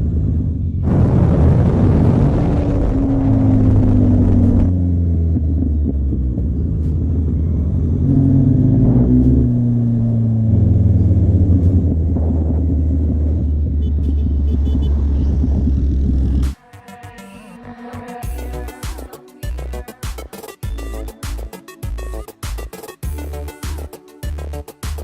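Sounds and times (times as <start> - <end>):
motorcycle engines rumbling: 0.0 - 16.6.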